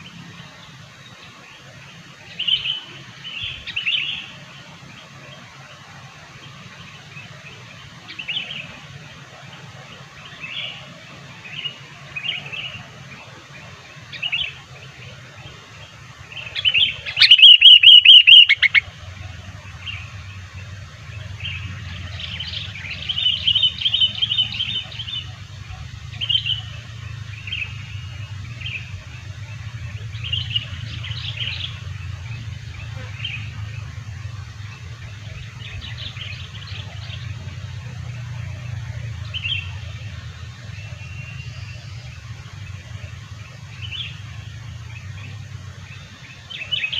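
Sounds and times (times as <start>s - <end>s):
fast run of repeated bird notes: 6.4s - 46.9s
loud distorted bird trill: 16.6s - 18.9s
bulbul chirping: 16.7s - 18.9s
steady low hum: 18.6s - 46.9s.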